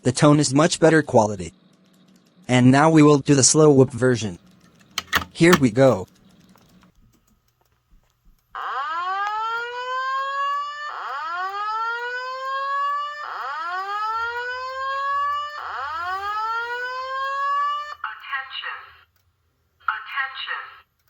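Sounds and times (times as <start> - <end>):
fire alarm whoop tone: 8.6 - 18.0.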